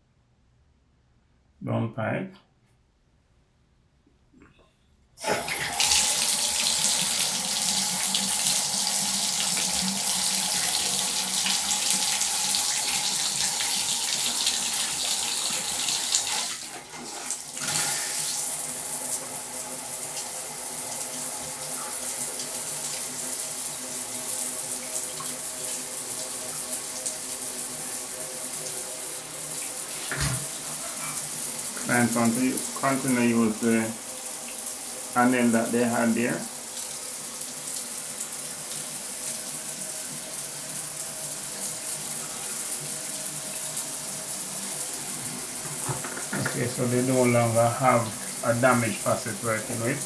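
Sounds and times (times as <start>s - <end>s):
water running from faucet: 5.2s - 50.0s.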